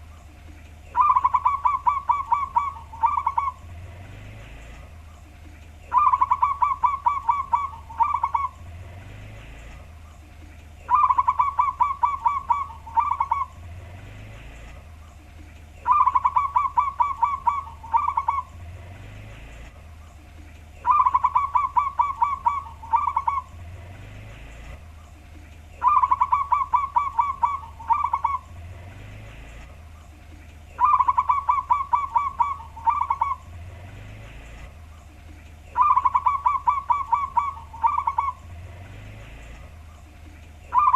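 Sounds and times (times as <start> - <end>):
dove cooing: 0.0 - 40.9.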